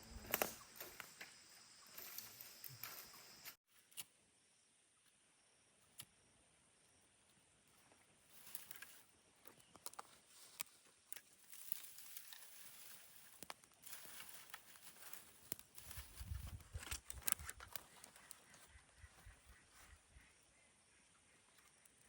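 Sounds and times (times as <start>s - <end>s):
faint rustling and crackling: 7.7s - 20.0s.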